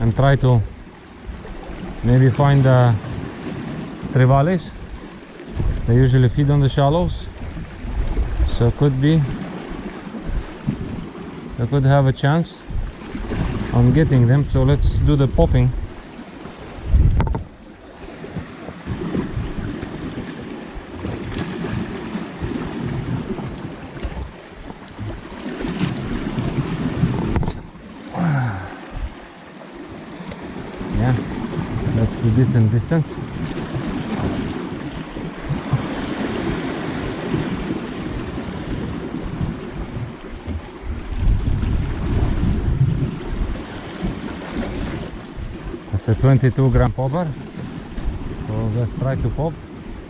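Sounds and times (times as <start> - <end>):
waves washing on rocky shore: 0.0 - 50.0
wind buffeting microphone: 0.0 - 50.0
short low thump: 16.9 - 17.5, 18.3 - 20.2, 24.0 - 26.3.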